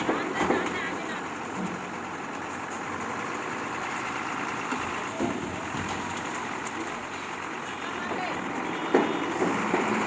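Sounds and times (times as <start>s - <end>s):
heavy vehicle engine running: 0.0s - 10.0s.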